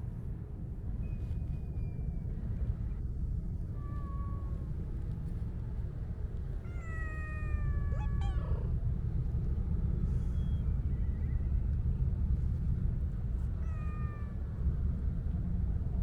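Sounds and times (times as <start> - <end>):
cat meowing: 6.7 - 8.8, 13.6 - 14.4.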